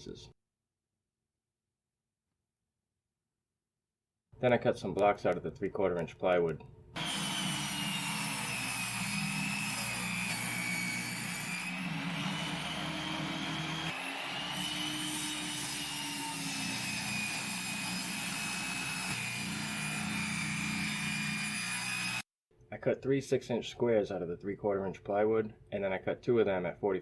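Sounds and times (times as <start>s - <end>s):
power saw cutting wood: 7.0s - 22.2s.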